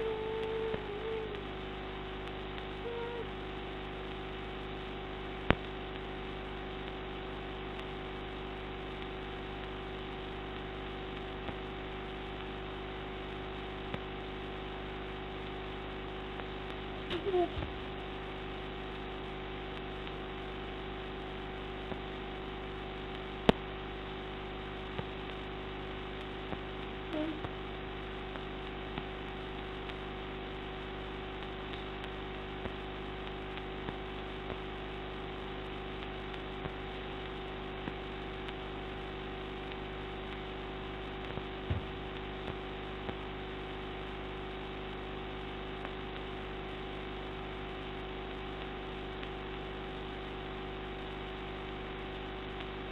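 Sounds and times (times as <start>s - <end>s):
electrical hum with hiss: 0.0s - 52.9s
soft low thump: 41.7s - 41.9s.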